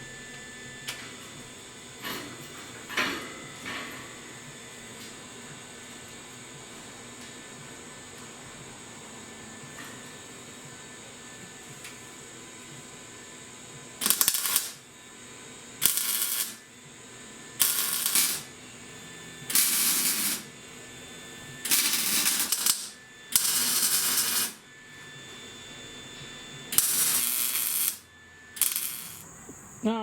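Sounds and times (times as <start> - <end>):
arc welder buzzing: 9.3 - 30.0.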